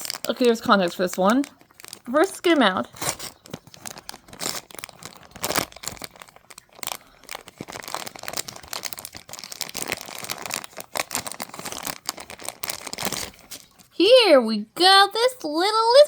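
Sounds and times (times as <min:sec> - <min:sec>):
plastic packaging crinkling: 0:00.0 - 0:14.0.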